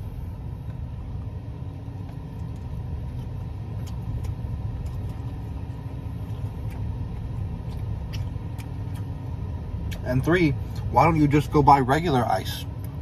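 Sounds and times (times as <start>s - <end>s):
steady low rumble: 0.0s - 13.0s.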